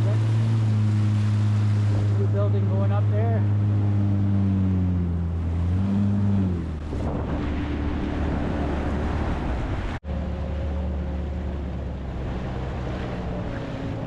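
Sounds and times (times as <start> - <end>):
wind noise: 0.0 - 10.0
water splashing: 0.0 - 14.0
watercraft engine running: 0.0 - 14.0.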